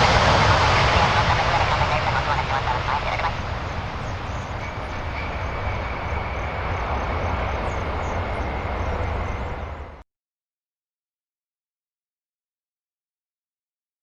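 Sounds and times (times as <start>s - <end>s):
aircraft engines running: 0.0s - 10.0s
faint high whine: 0.0s - 10.0s.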